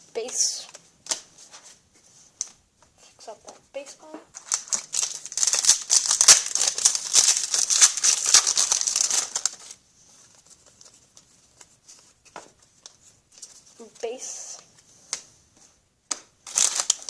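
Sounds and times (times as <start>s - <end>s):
card wrappers crinkling: 4.3s - 13.7s, 16.4s - 17.0s.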